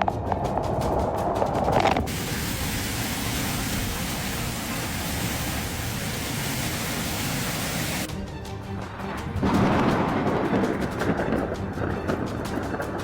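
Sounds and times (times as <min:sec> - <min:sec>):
music: 0:00.0 - 0:13.0
heavy rain hissing: 0:02.1 - 0:08.1.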